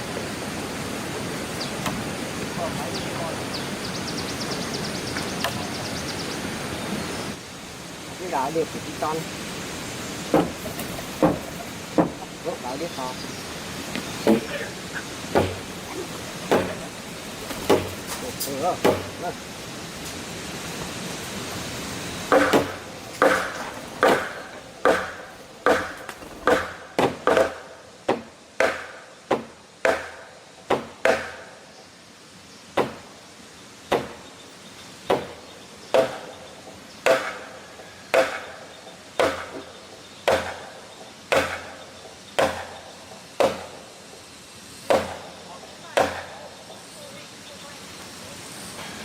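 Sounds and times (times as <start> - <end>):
hand tool striking wood: 10.3 - 12.5, 14.0 - 19.3, 22.3 - 31.4, 35.1 - 36.3, 37.0 - 38.6, 39.2 - 39.7, 40.3 - 40.7, 41.3 - 41.7, 42.4 - 42.8, 43.4 - 43.8, 44.9 - 45.3, 46.0 - 46.3.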